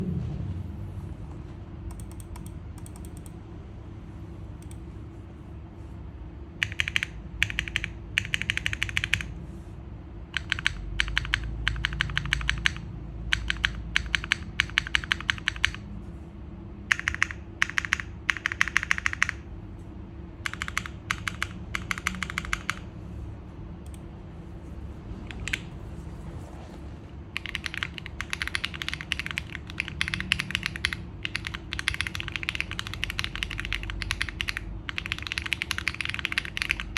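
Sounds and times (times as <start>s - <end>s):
mechanical keyboard typing: 1.9s - 3.4s, 6.6s - 9.4s, 10.3s - 15.8s, 16.9s - 19.5s, 20.4s - 22.9s, 25.2s - 25.8s, 27.4s - 36.9s.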